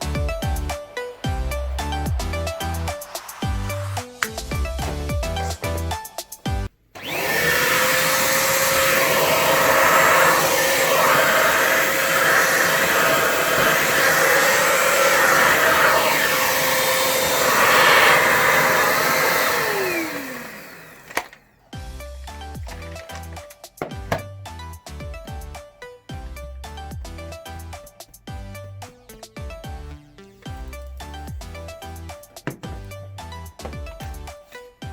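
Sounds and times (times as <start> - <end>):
rushing air: 0.0 - 5.6
vacuum cleaner motor whine: 7.0 - 21.4.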